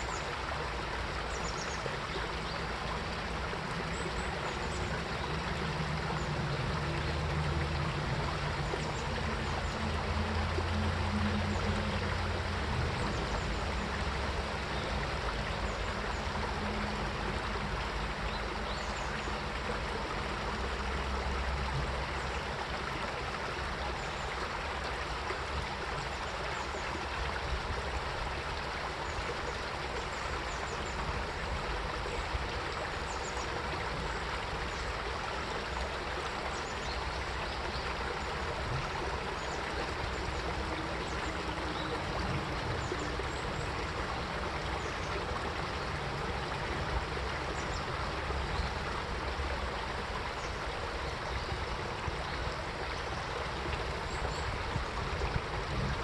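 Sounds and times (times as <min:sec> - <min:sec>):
stream flowing over rocks: 0:00.0 - 0:56.0.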